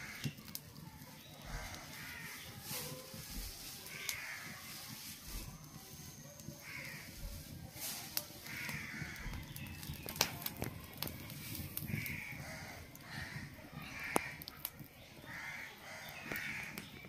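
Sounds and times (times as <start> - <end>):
crows cawing: 0.0 - 0.3, 1.4 - 2.5, 3.8 - 4.7, 6.6 - 7.1, 8.4 - 9.6, 11.9 - 14.5, 15.3 - 16.8.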